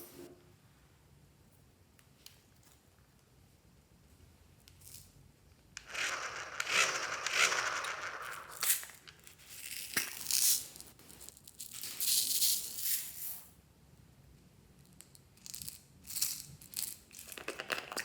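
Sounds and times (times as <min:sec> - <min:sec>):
slime rattling and crackling: 0:05.8 - 0:09.3.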